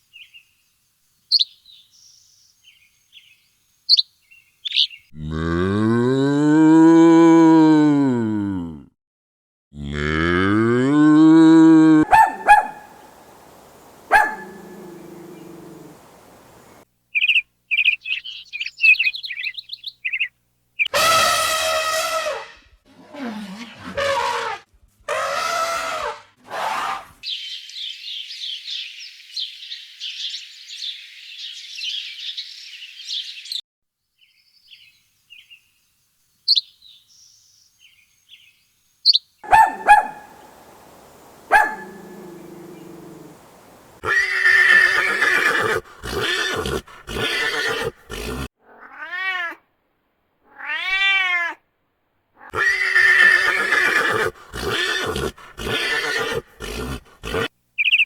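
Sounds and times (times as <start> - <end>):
animal calls: 11.8 - 16.8, 39.4 - 48.8, 52.4 - 58.0.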